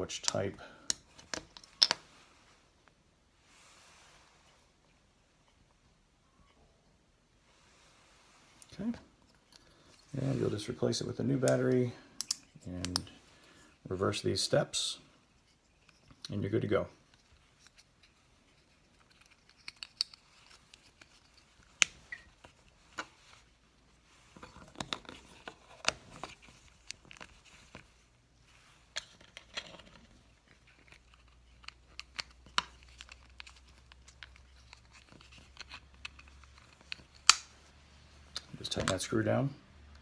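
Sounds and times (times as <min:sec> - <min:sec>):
rustling handling: 0:15.1 - 0:39.2.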